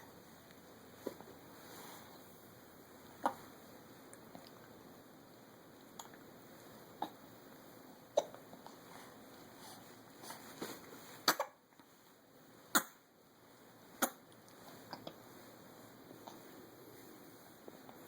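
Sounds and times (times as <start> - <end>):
baby hiccupping: 11.2 - 11.6.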